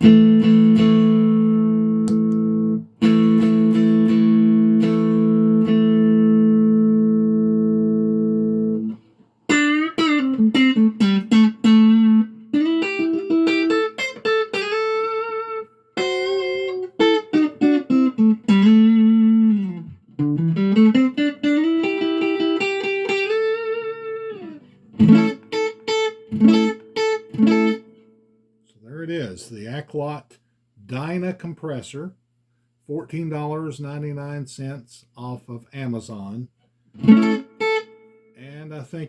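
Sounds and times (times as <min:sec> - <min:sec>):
electric guitar playing: 0:00.0 - 0:28.3, 0:37.0 - 0:38.4.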